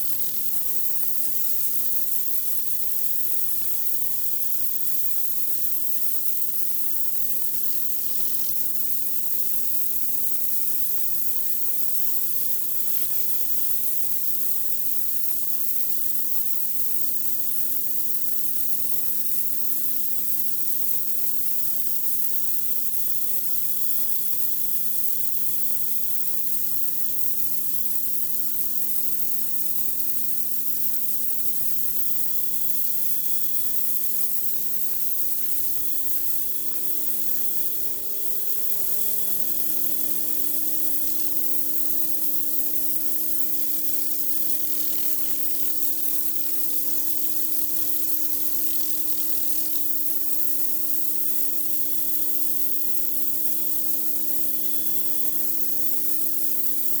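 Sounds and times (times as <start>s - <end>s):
machine hum: 33.9s - 49.4s.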